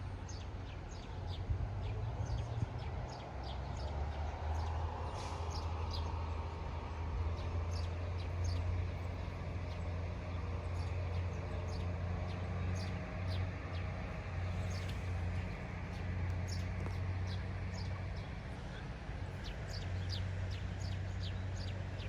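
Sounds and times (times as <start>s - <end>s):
birds chirping: 7.3s - 22.0s.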